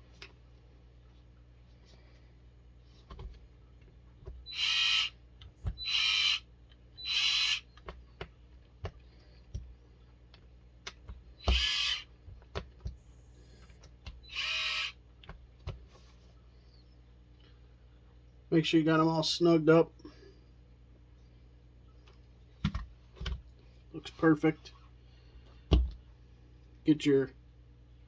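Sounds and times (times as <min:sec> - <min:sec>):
electric screwdriver whirring: 0:04.5 - 0:05.1, 0:05.7 - 0:06.4, 0:07.0 - 0:07.6, 0:11.4 - 0:12.1, 0:14.3 - 0:15.0.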